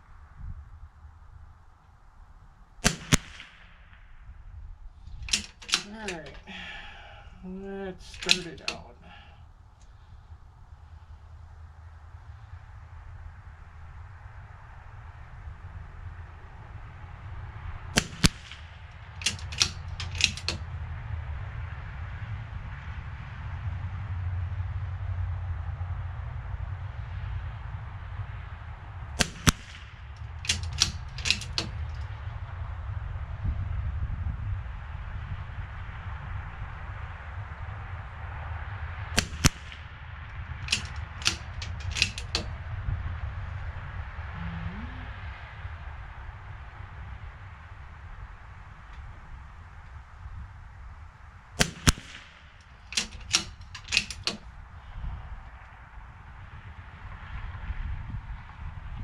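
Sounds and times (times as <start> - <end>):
steady low rumble: 0.0 - 59.0
rifle gunshots: 2.8 - 4.0, 18.0 - 20.6, 29.2 - 31.8, 39.2 - 39.8, 51.6 - 53.4
low rumble: 40.6 - 51.5.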